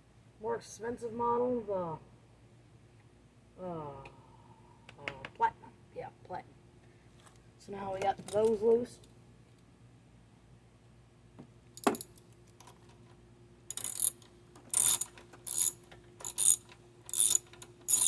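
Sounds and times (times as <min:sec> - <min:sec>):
socket ratchet clicking: 0:13.7 - 0:18.0.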